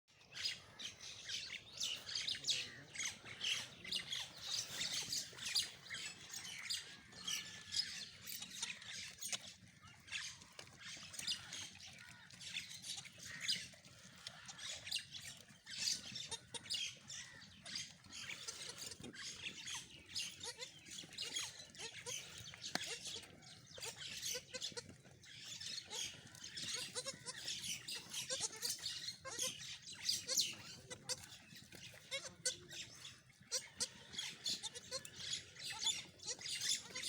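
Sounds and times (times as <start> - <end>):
birds chirping and squawking: 0.1 - 37.0.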